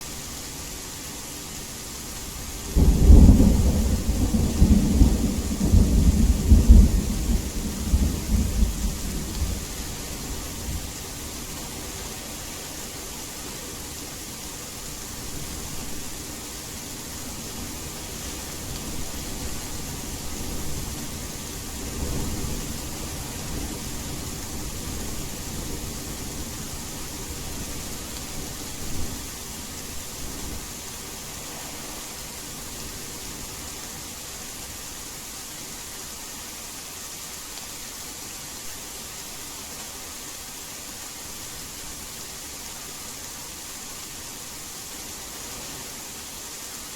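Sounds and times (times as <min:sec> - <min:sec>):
steady rain hiss: 0:00.0 - 0:46.9
thunder rumble: 0:02.6 - 0:11.0.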